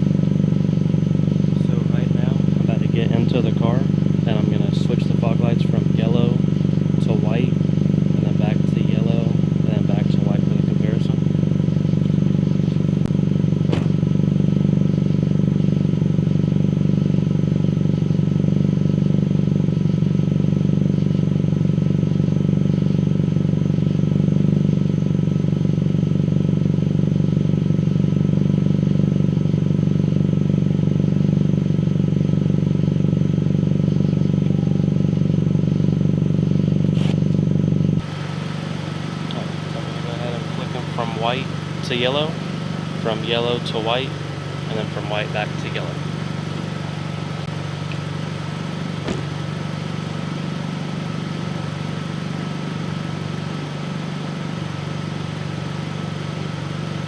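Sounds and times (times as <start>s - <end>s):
car engine idling: 0.0s - 57.0s.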